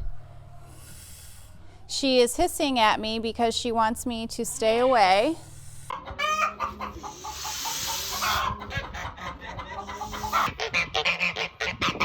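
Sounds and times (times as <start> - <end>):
chickens clucking: 5.9 - 12.0
steady hiss: 7.2 - 8.4.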